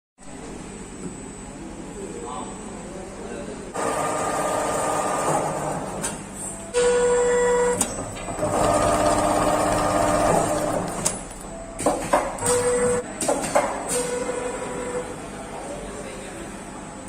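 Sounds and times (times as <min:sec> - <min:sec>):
sewing machine motor whine: 0:07.4 - 0:11.6.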